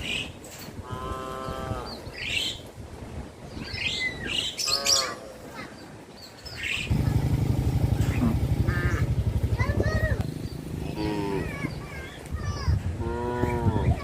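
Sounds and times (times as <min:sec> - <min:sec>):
small birds chirping: 0:03.5 - 0:14.0
engine running: 0:06.9 - 0:11.9.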